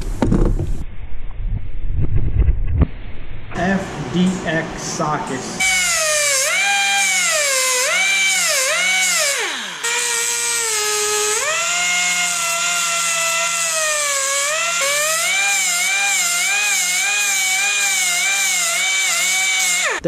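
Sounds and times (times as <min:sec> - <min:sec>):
power tool motor whining: 0:05.6 - 0:20.0.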